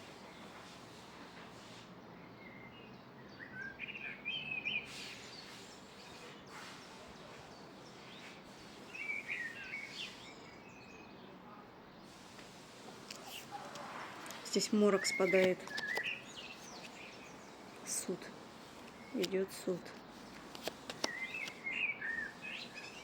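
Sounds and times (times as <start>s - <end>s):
outdoor background hiss: 0.0s - 23.0s
songbird twittering: 2.3s - 11.4s, 14.3s - 23.0s.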